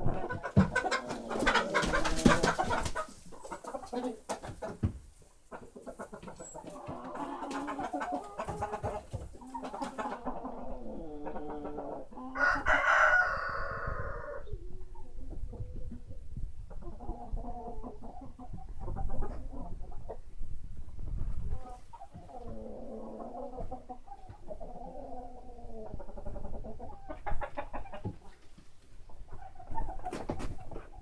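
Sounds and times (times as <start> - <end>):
chickens clucking: 0.0 - 31.0
rooster crowing: 12.4 - 14.4.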